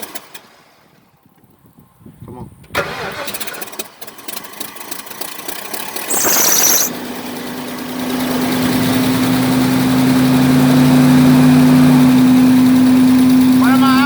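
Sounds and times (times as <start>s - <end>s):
engine cranking and idling: 2.8s - 5.7s
brief hiss: 6.1s - 6.9s.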